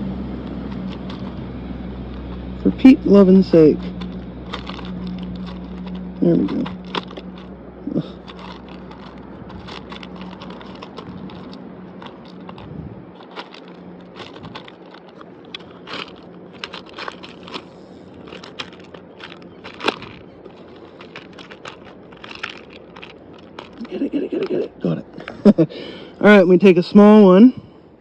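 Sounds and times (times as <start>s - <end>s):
fingers rattling small sinkers: 0.4s - 1.4s, 2.0s - 25.4s.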